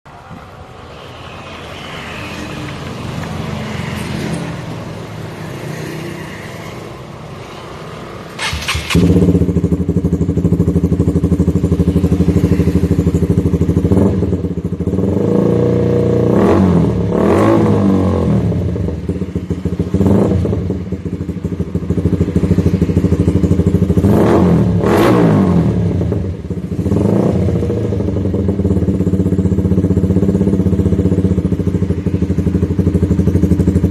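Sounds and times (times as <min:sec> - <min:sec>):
motorcycle engine idling: 0:08.4 - 0:15.4, 0:18.4 - 0:24.8, 0:25.7 - 0:33.9.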